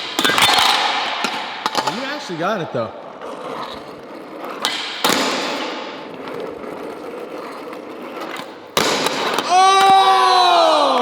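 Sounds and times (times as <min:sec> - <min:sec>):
skateboard sharp hit: 0:00.0 - 0:02.3, 0:04.5 - 0:06.4, 0:08.3 - 0:10.3
skateboard rolling on concrete: 0:03.0 - 0:11.0
skateboard hard landing: 0:04.5 - 0:06.4, 0:08.2 - 0:10.4.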